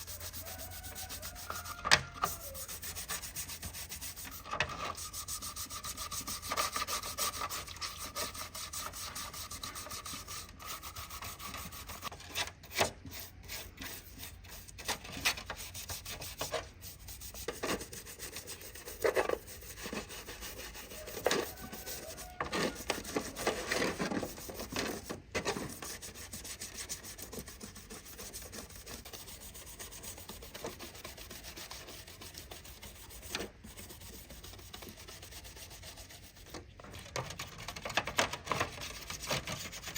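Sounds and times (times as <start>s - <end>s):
abrasive sanding a surface: 0.0s - 12.2s, 13.0s - 39.9s.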